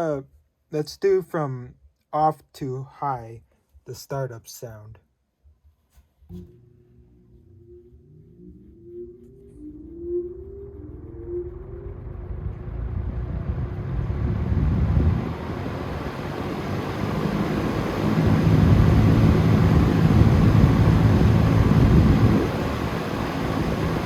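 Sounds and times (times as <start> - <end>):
box fan spinning up: 6.3 - 24.0.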